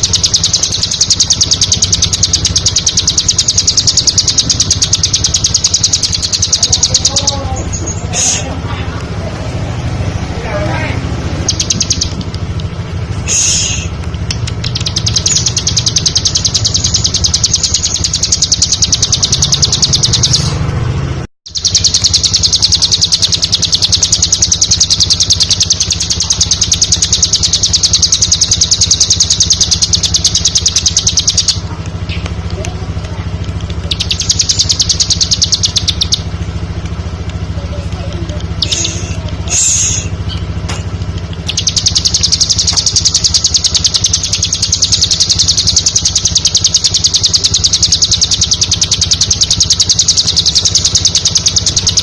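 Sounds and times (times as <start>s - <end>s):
steady low hum: 0.0s - 52.0s
bird singing fast high notes: 11.2s - 12.2s, 14.7s - 20.6s.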